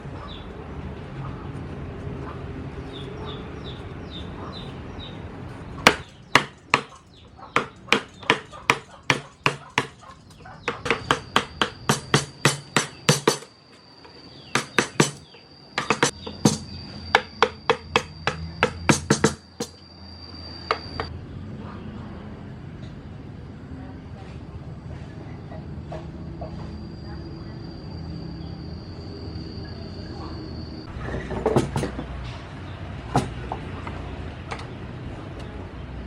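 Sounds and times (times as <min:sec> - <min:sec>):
mallet striking chisel into wood: 0:05.8 - 0:07.0, 0:07.6 - 0:10.0, 0:10.6 - 0:13.5, 0:14.5 - 0:19.8.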